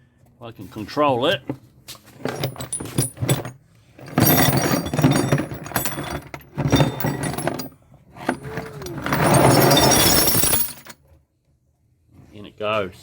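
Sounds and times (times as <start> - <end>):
metal scrap clattering: 2.2 - 11.0.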